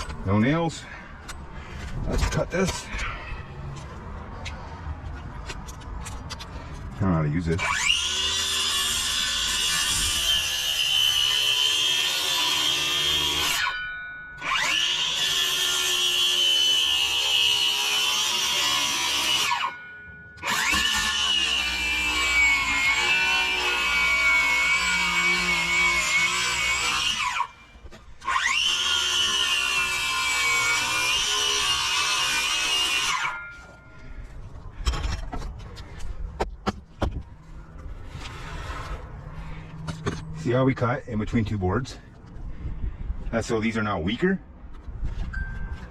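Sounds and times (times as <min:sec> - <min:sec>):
power saw cutting wood: 0:07.5 - 0:13.8, 0:14.4 - 0:33.8.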